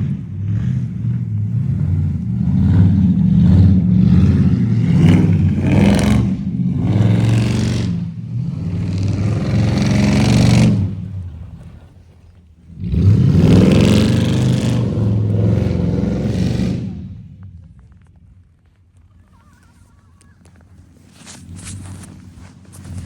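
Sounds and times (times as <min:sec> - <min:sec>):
car engine revving: 0:00.0 - 0:11.4, 0:12.7 - 0:17.4.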